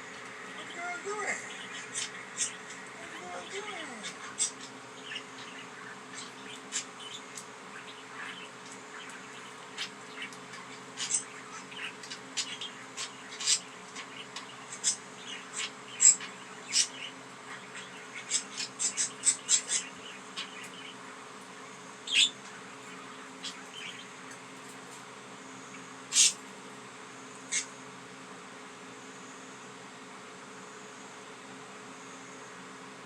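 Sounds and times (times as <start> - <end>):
budgerigars chirping: 0.0 - 25.0, 25.6 - 26.4
faint steady hum: 0.0 - 33.0.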